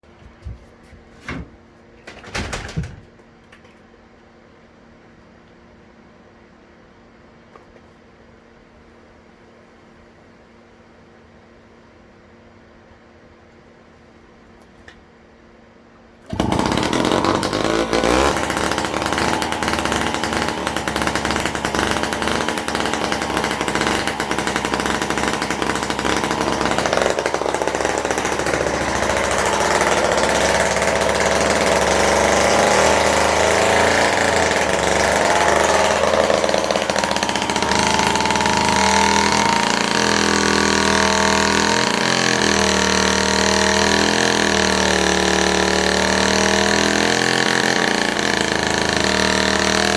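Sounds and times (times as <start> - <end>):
chainsaw engine running: 16.3 - 49.9.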